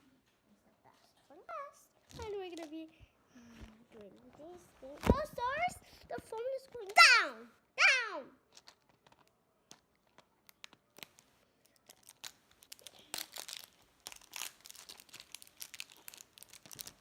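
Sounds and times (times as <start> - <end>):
packaging crinkling and tearing: 2.0 - 2.8, 8.5 - 17.0.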